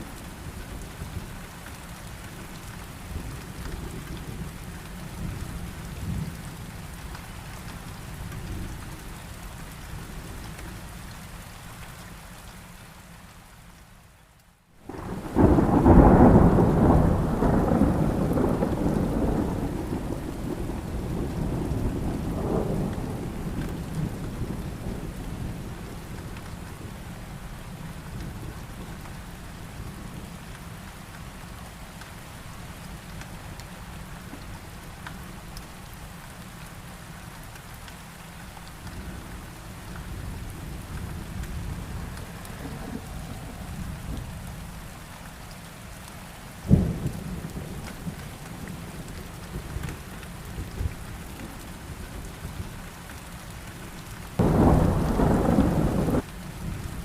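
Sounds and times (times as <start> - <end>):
steady rain: 0.0 - 57.0
thunderclap rumbling: 14.9 - 26.6, 40.8 - 44.3, 54.4 - 57.0.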